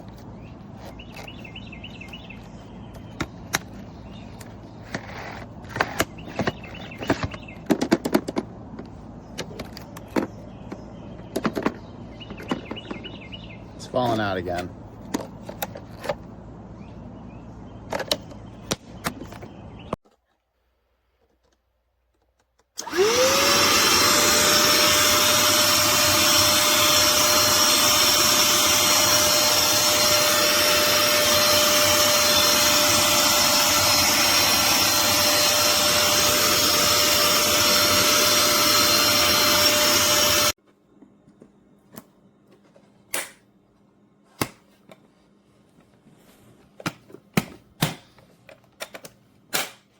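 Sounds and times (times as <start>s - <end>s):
handheld vacuum motor whining: 22.8s - 40.6s.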